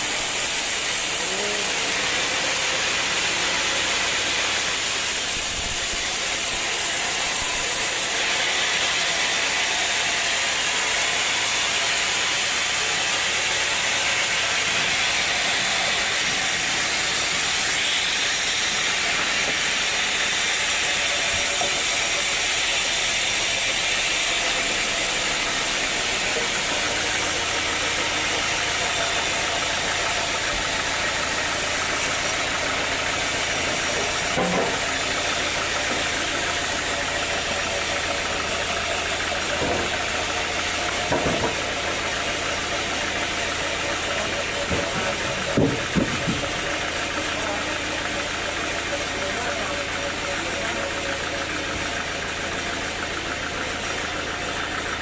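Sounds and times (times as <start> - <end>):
loud even hiss: 0.0 - 11.6
sawmill engine running: 0.0 - 55.0.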